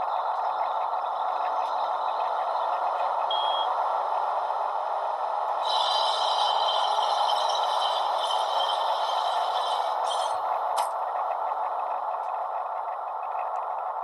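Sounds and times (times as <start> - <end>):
diesel engine sound from small speaker: 0.0 - 14.0
high beep: 3.3 - 3.7.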